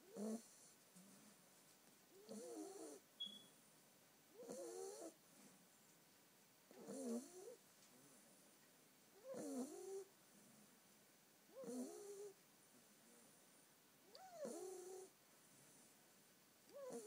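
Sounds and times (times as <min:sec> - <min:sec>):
puppy snoring: 0:00.0 - 0:00.7, 0:02.1 - 0:03.4, 0:04.3 - 0:05.2, 0:06.7 - 0:07.6, 0:09.2 - 0:10.1, 0:11.5 - 0:12.4, 0:14.0 - 0:15.8, 0:16.7 - 0:17.0.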